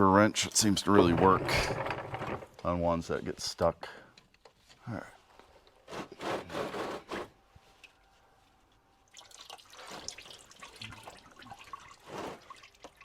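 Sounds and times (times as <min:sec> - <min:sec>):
oil dripping and trickling: 0:09.0 - 0:13.0.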